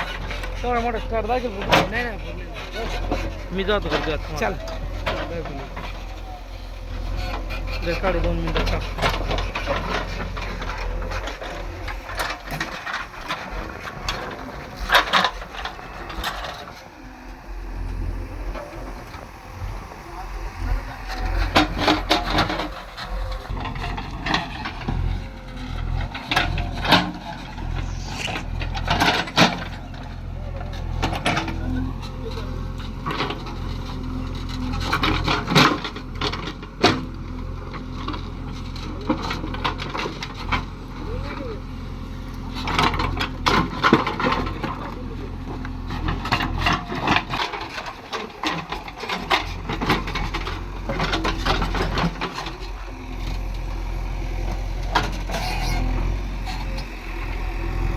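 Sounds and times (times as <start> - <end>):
backhoe bucket clanking: 0.0 - 57.9
low engine hum: 0.0 - 57.9
bucket scraping through earth: 21.3 - 29.9.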